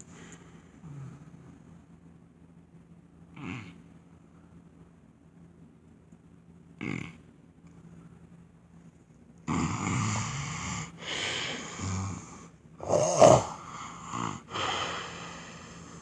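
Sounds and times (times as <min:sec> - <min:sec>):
man snoring loudly: 0:09.5 - 0:16.0.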